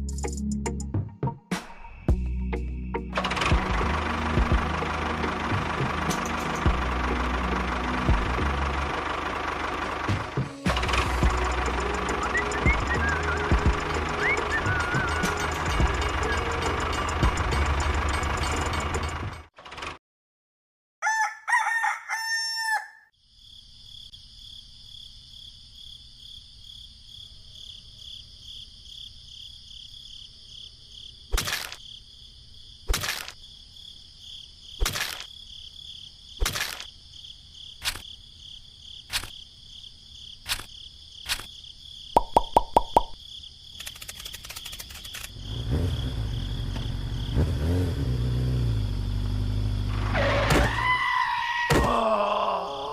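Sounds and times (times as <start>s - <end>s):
rooster crowing: 21.0s - 23.1s
crickets chirring: 23.1s - 52.9s
sharp clicks: 36.4s - 36.9s, 40.4s - 41.6s, 42.2s - 45.4s.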